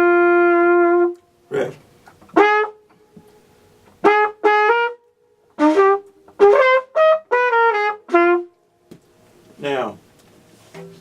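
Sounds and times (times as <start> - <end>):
flugelhorn playing short notes: 0.0 - 1.7, 2.3 - 2.9, 4.0 - 5.0, 5.6 - 8.6.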